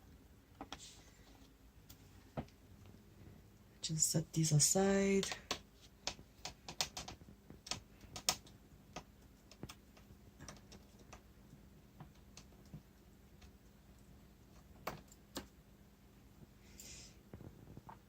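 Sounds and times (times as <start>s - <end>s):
light clicks and taps: 5.2s - 15.6s.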